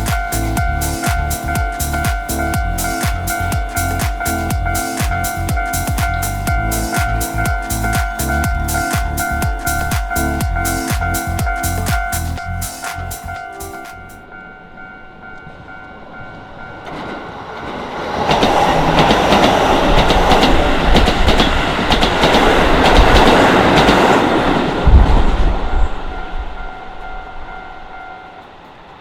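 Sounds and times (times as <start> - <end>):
heavy low thump: 0.0 - 13.5
level crossing bell ringing: 0.0 - 16.7
train passing at speed: 0.0 - 29.0
wheels clacking over rail joints: 16.9 - 24.8.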